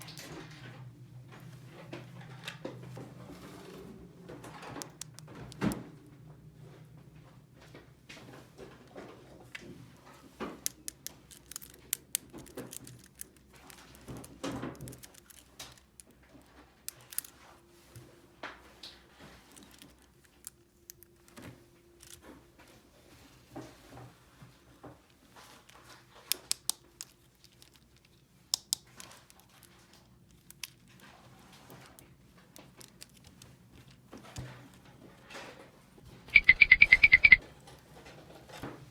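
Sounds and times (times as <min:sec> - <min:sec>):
plastic toy pieces clicking: 0:10.6 - 0:16.1, 0:16.9 - 0:17.3, 0:36.4 - 0:37.4.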